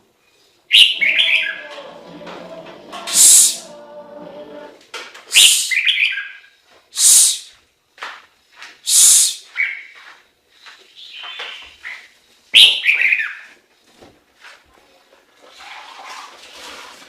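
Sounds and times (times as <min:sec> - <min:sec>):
bird whistled notes: 0:00.7 - 0:01.6.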